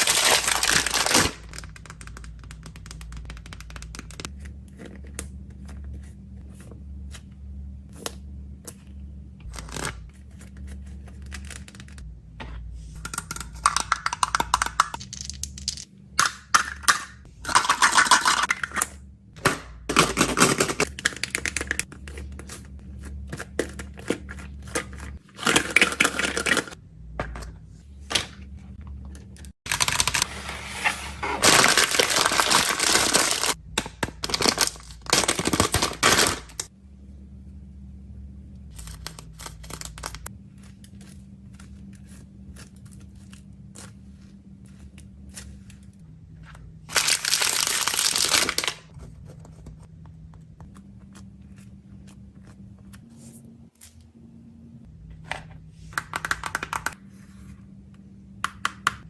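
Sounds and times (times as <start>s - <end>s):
plastic packaging crinkling and tearing: 0.0s - 1.9s, 31.4s - 33.6s, 46.9s - 48.9s
items clicking and tapping: 11.1s - 30.3s, 55.1s - 57.0s.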